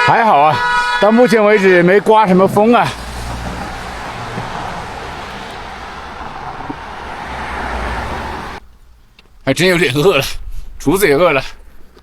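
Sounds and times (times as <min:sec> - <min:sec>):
vehicle passing on highway: 0:01.6 - 0:12.0.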